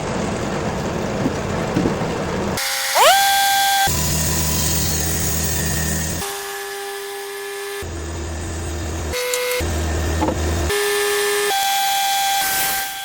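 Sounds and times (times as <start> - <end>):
rising whine: 3.0 - 3.4.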